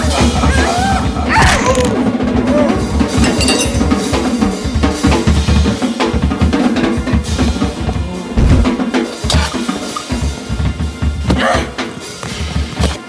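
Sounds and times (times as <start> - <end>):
drum-driven music: 3.0 - 11.2.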